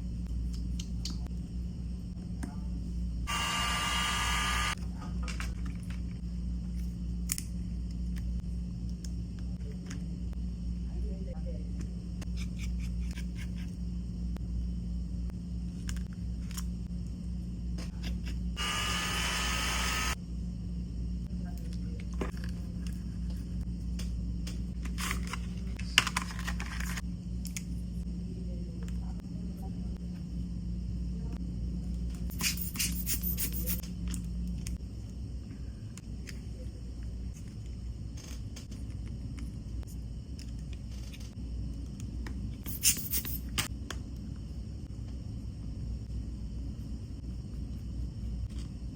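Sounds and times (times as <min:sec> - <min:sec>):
steady low rumble: 0:00.0 - 0:03.3
steady low hum: 0:00.0 - 0:48.9.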